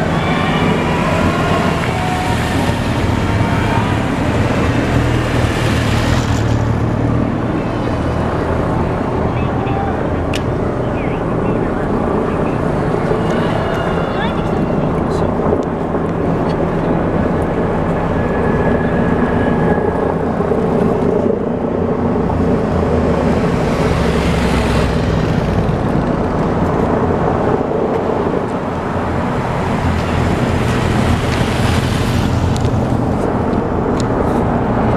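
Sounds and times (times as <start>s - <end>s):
vehicles passing on road: 0.0s - 34.9s.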